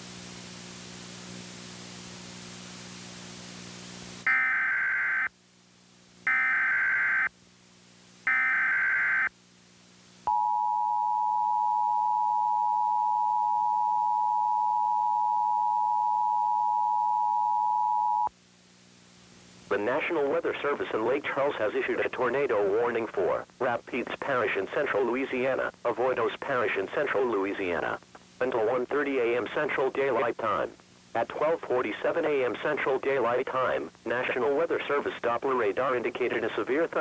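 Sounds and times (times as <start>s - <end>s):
static hiss: 0.0s - 10.3s, 18.2s - 37.0s.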